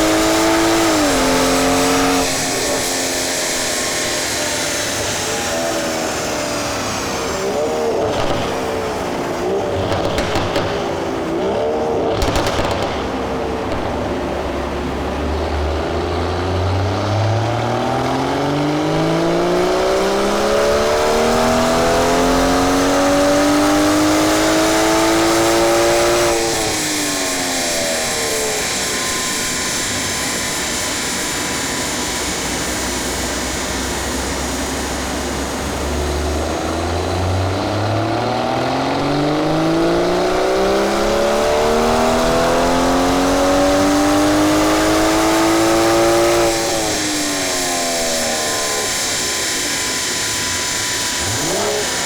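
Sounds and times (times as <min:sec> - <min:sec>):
car engine revving: 0:00.0 - 0:52.0
exhaust crackle: 0:00.0 - 0:52.0.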